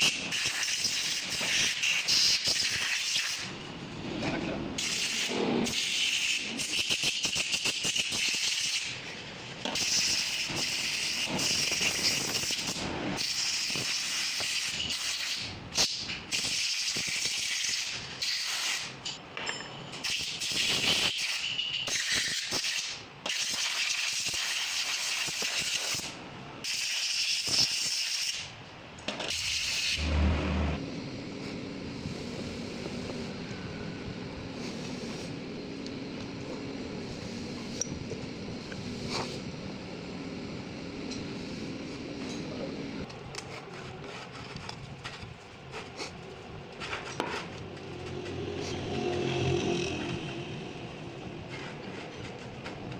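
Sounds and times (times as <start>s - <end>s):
low hum: 30.0s - 34.6s, 47.5s - 52.4s.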